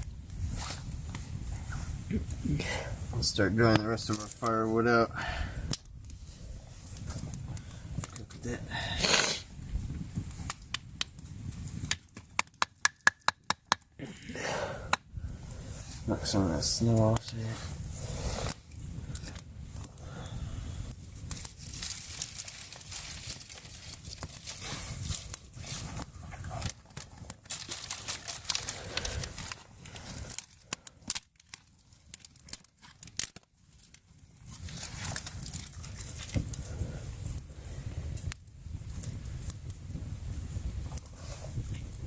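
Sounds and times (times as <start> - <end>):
campfire crackling and popping: 0.0 - 42.0
sticks rustling: 21.2 - 30.8.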